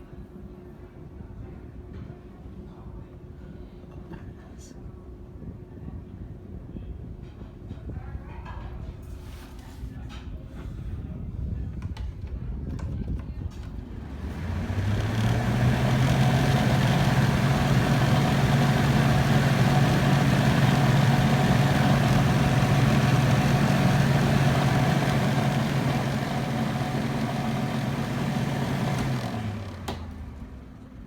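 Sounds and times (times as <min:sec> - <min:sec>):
desk fan motor humming: 0:13.8 - 0:31.0.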